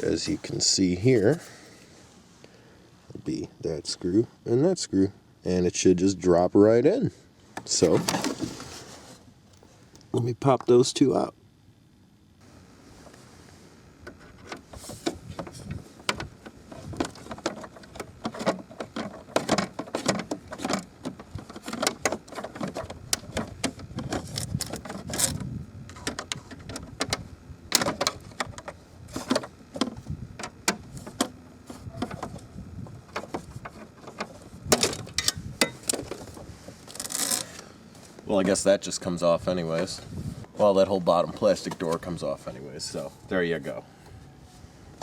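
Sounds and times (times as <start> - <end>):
plastic parts clicking and scraping: 14.1 - 37.7.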